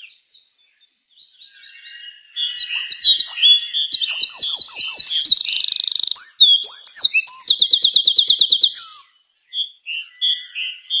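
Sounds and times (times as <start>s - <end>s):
songbird singing: 0.0s - 11.0s.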